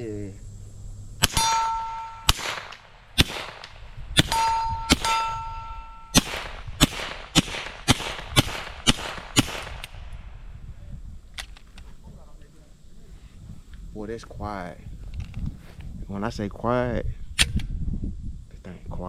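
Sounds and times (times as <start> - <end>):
steel target ringing: 1.2 - 3.5, 4.2 - 6.4
suppressed pistol shots: 1.2 - 5.3, 6.1 - 10.3.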